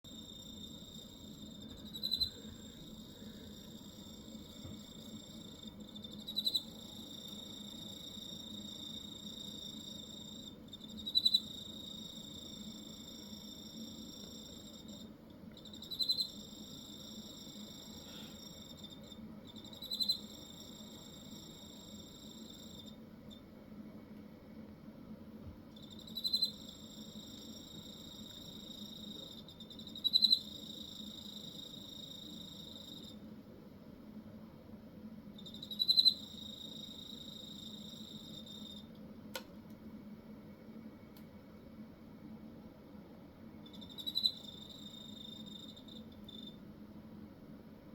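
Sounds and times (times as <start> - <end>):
cricket trilling: 0.0 - 23.4, 25.7 - 33.2, 35.3 - 38.9, 43.6 - 46.6
burst of rapid cricket pulses: 0.0 - 23.5, 25.7 - 33.3, 35.3 - 38.9, 43.5 - 46.7
sharp click: 39.3 - 39.6.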